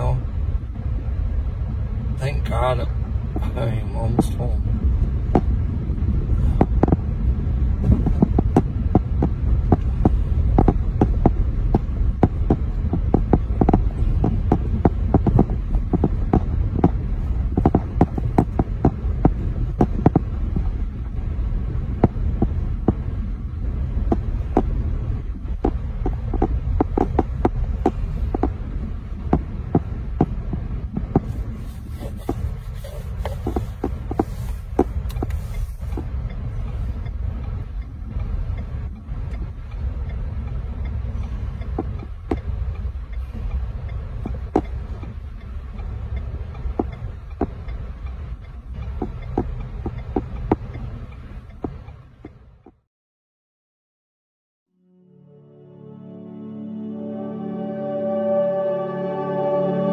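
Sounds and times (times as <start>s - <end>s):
car driving on snowy road: 0.0s - 52.9s
light ticks and knocks: 33.2s - 52.8s.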